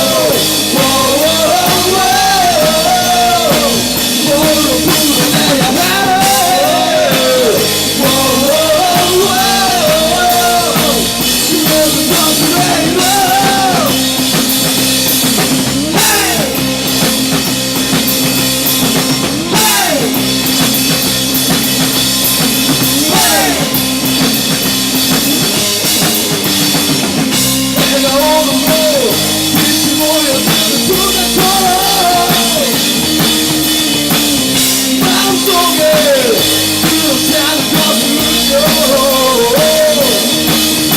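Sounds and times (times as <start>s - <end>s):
person singing: 0.0s - 14.2s, 15.8s - 16.6s, 19.4s - 20.2s, 22.9s - 23.8s, 27.8s - 33.0s, 34.8s - 40.6s
drum kit: 0.0s - 40.9s
electric guitar: 0.0s - 40.9s.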